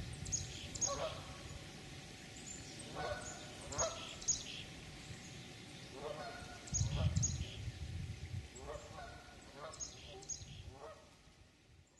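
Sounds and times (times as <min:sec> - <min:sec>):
small birds chirping: 0:00.1 - 0:01.6, 0:02.3 - 0:07.8, 0:09.4 - 0:10.7
geese honking: 0:00.7 - 0:01.4, 0:02.9 - 0:04.6, 0:05.9 - 0:07.2, 0:08.6 - 0:11.1.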